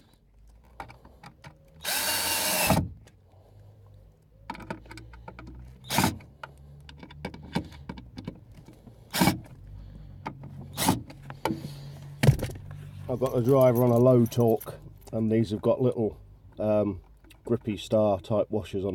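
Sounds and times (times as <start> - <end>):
cordless drill driving screws: 1.8 - 2.9
handling clicks and knocks: 4.4 - 9.5.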